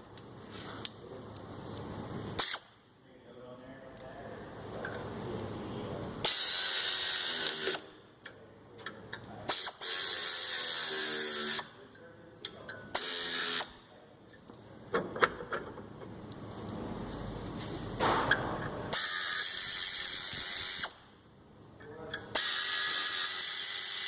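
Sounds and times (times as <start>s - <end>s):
power ratchet running: 6.2s - 7.8s, 9.5s - 11.7s, 13.0s - 13.8s, 18.9s - 21.0s, 22.3s - 24.0s
tools clicking and knocking: 7.4s - 9.3s, 14.9s - 16.1s.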